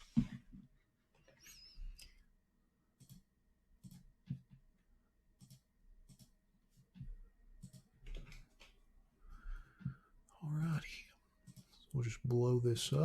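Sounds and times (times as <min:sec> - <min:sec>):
faint computer mouse clicks: 0:05.4 - 0:06.4.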